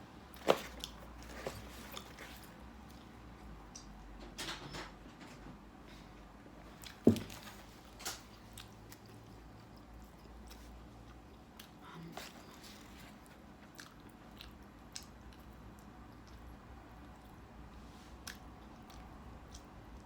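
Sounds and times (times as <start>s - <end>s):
pizza being bitten and chewed: 7.8s - 20.0s.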